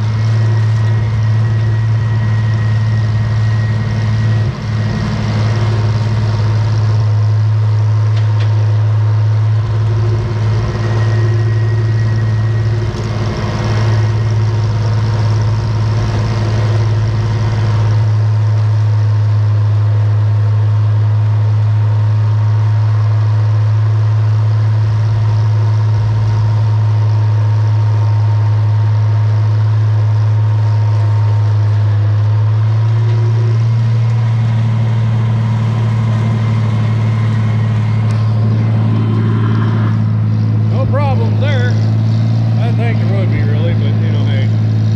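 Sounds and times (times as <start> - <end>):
tractor engine droning: 0.0 - 44.9
uneven low rumble: 31.2 - 44.9.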